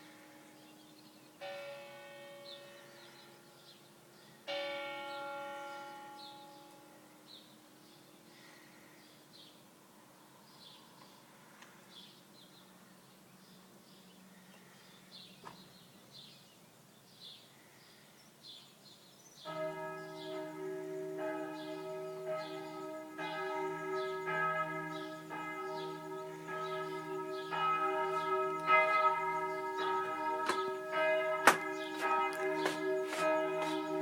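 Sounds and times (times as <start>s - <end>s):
church bells pealing: 0.0s - 7.4s, 19.4s - 34.0s
faint birds chirping: 5.1s - 34.0s.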